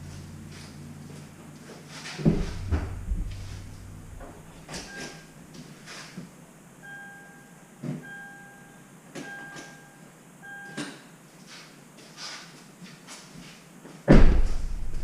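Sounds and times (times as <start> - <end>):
electronic beep tone: 6.8 - 10.8.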